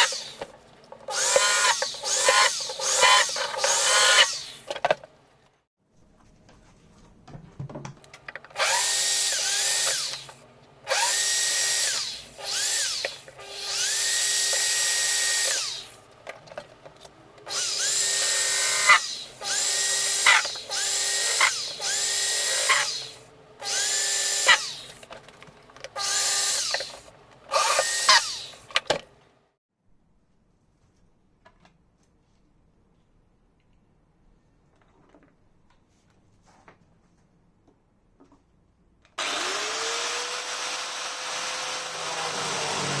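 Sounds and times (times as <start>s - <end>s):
cordless drill whining: 0.0s - 0.5s, 1.1s - 4.7s, 8.6s - 16.0s, 17.5s - 25.0s, 26.0s - 28.7s, 39.2s - 43.0s.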